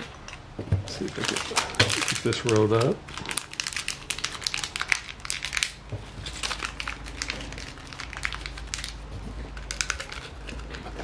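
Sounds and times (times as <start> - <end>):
hand handling noise: 4.8 - 11.0.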